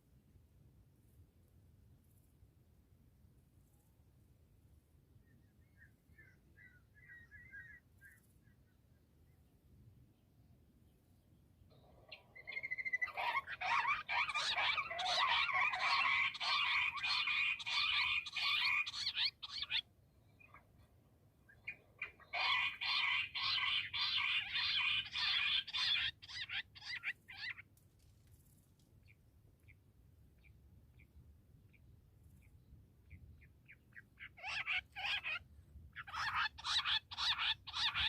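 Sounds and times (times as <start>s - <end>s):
quail chattering calls: 12.0s - 19.8s, 21.6s - 27.7s, 33.6s - 38.0s.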